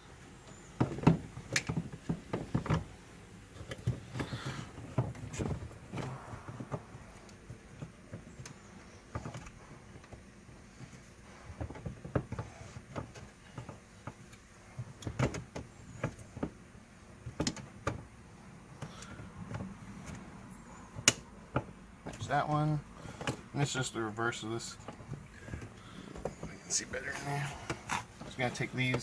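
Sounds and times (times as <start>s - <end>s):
hand tools clicking and knocking: 24.5s - 29.0s.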